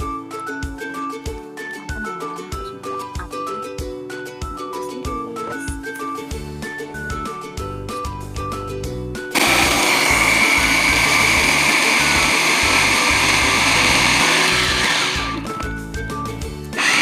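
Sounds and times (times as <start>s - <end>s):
electric blender whining: 9.3s - 15.8s, 16.7s - 17.0s.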